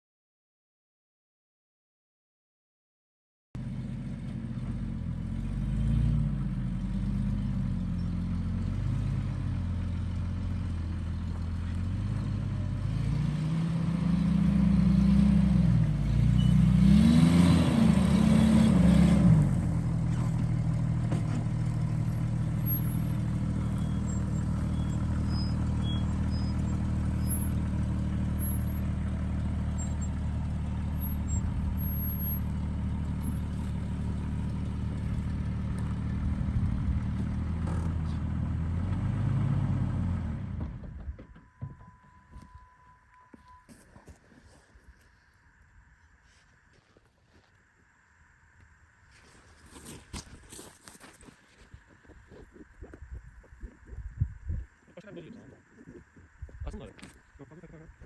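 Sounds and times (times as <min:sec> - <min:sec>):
vehicle engine revving: 0:03.6 - 0:41.2.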